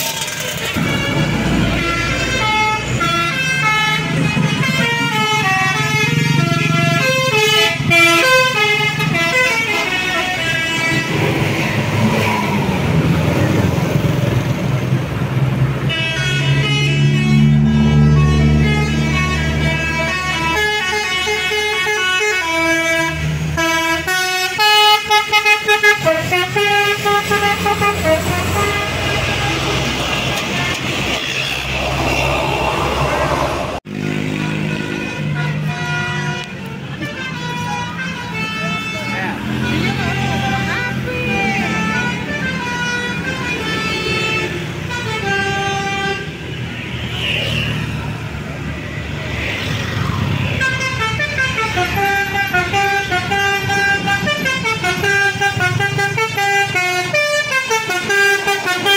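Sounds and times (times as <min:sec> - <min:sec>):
multi-tone bus horn tune: 0:00.0 - 0:12.4, 0:15.7 - 0:31.9, 0:33.2 - 0:48.1, 0:50.5 - 0:58.9
bus engine running: 0:00.0 - 0:46.7.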